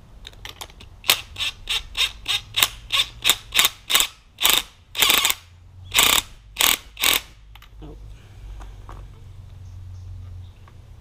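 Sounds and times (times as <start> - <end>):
ratchet wrench clicking: 1.0 - 7.4.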